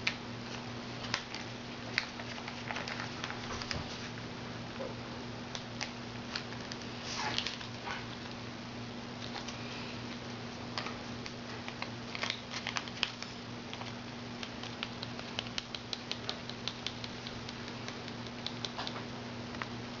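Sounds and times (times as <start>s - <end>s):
low electrical hum: 0.0s - 20.0s
paper crackling while creased: 1.0s - 4.1s, 11.6s - 14.0s.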